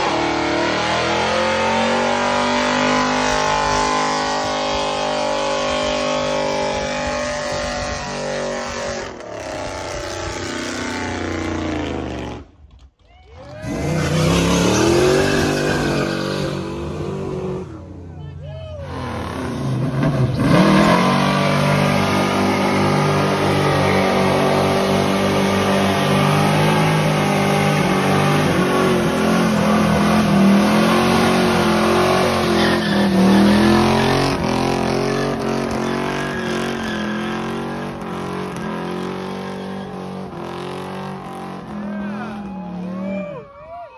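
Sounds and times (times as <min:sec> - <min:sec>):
car engine revving hard: 0:00.0 - 0:12.5, 0:13.6 - 0:17.7, 0:18.9 - 0:42.4.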